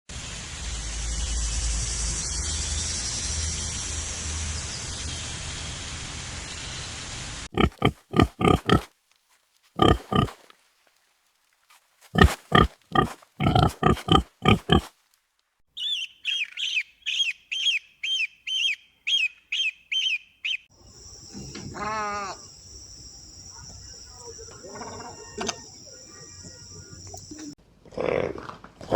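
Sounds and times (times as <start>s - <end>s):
pig squeals and grunts: 7.6s - 8.9s, 9.8s - 10.4s, 12.2s - 14.9s.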